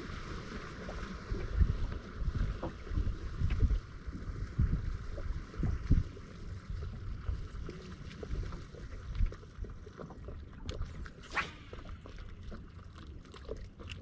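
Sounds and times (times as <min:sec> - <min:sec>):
brief swish: 0:11.2 - 0:12.5.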